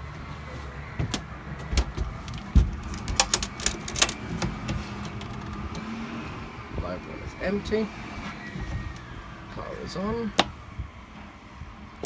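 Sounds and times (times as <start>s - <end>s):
dull thumps: 0.2s - 5.8s, 10.4s - 10.9s
sharp clicks and knocks: 1.0s - 5.9s.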